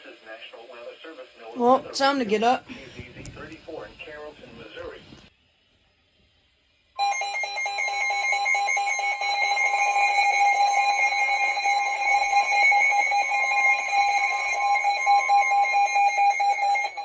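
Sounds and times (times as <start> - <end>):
weather radio alert alarm: 1.6 - 3.7, 8.3 - 17.0.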